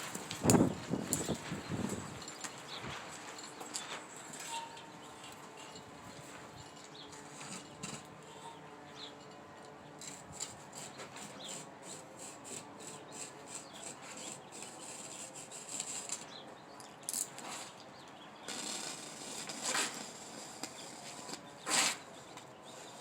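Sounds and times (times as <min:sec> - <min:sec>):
blade cutting through fabric: 0:10.0 - 0:16.4, 0:18.5 - 0:22.2.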